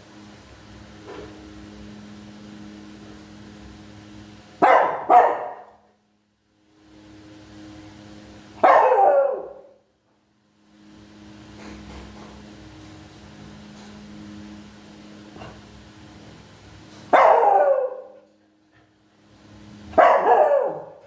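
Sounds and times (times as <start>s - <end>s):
steady low hum: 0.0s - 21.0s
small dog barking: 4.6s - 5.8s, 8.6s - 9.8s, 17.1s - 18.3s, 19.9s - 21.0s.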